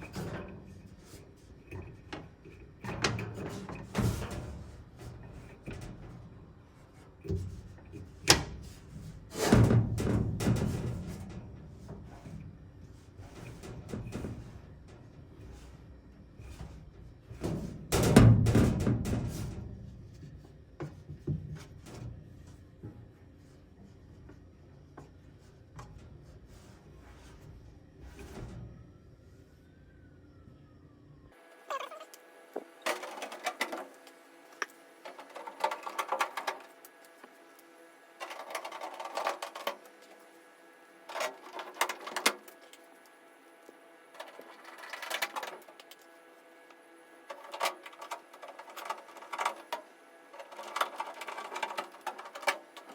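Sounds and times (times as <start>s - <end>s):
hollow metal banging and rattling: 9.3s - 12.2s, 17.3s - 19.9s.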